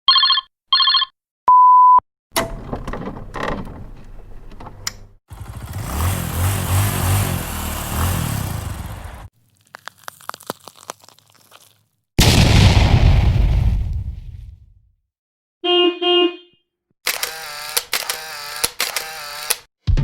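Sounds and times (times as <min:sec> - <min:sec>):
electronic phone ring: 0:00.1 - 0:01.1
cannon shot: 0:12.2 - 0:14.7.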